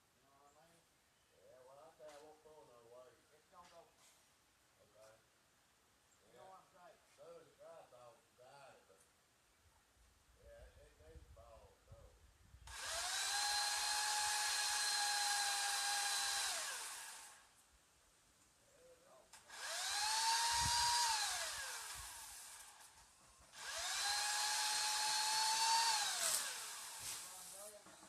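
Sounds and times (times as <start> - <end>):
electric saw motor whine: 12.7 - 17.5, 19.4 - 27.5.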